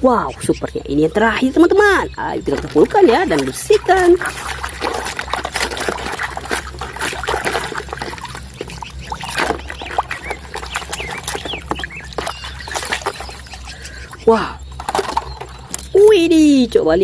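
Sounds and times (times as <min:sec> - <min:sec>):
water splashing and sloshing: 0:00.0 - 0:16.6
plastic toys clicking and knocking: 0:14.8 - 0:16.0.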